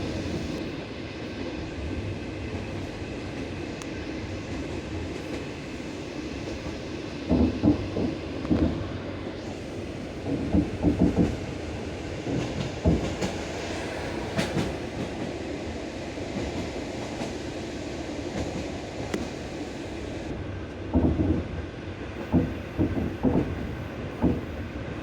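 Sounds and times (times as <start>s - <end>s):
train wheels clattering over rail joints: 6.5s - 8.9s, 10.2s - 15.4s, 20.9s - 21.6s, 22.2s - 24.7s.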